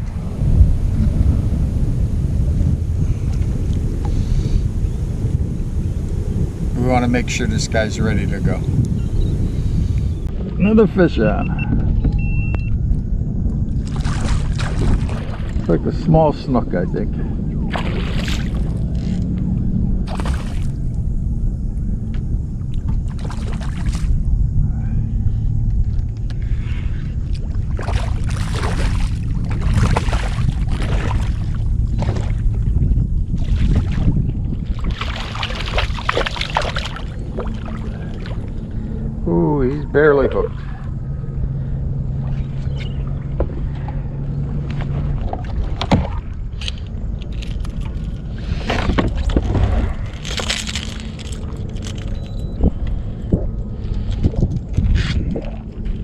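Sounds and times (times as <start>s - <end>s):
low steady hum: 0.0s - 56.0s
steady low rumble: 0.0s - 56.0s
water sloshing and splashing: 13.4s - 21.0s, 22.1s - 24.2s, 25.7s - 39.2s, 40.3s - 56.0s.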